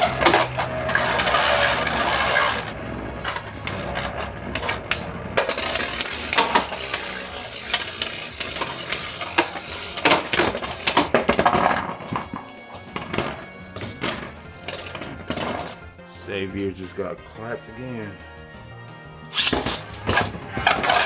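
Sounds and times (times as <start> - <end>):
spinning tops whirring: 0.0 - 16.0, 19.3 - 21.0
music: 0.0 - 21.0
spinning tops clacking together: 3.3 - 15.8.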